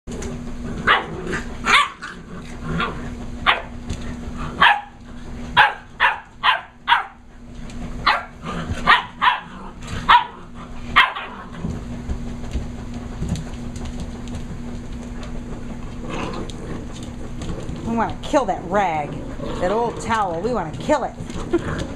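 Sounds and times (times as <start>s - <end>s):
low hum: 0.1s - 21.9s
puppies barking: 0.8s - 7.4s, 8.0s - 11.8s.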